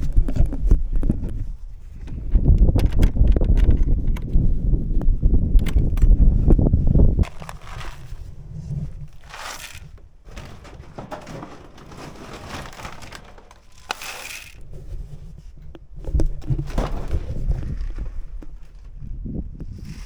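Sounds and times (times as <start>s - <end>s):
low microphone rumble: 0.0s - 20.0s
footsteps crunching in snow: 6.6s - 10.6s.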